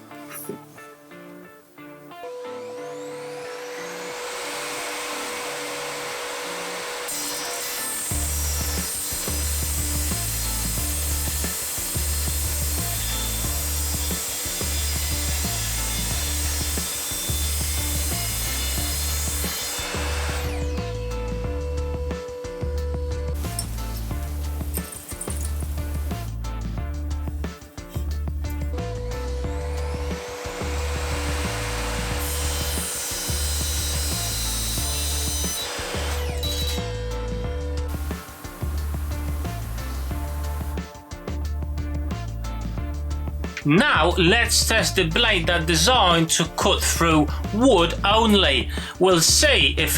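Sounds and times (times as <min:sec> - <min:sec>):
mitre saw cutting metal: 0:02.3 - 0:41.2, 0:43.5 - 0:49.9
background music with bass line: 0:08.1 - 0:49.9
background music with bass beat: 0:25.4 - 0:30.9, 0:36.8 - 0:46.1.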